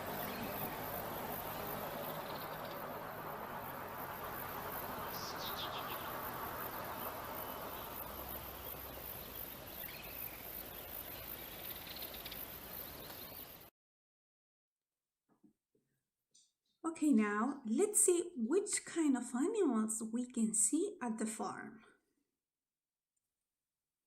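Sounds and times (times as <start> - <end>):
steady outdoor hiss: 0.0 - 13.7.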